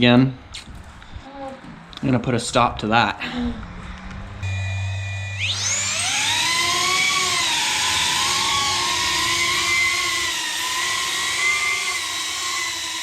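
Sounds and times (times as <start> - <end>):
drone propellers whining: 3.6 - 13.0.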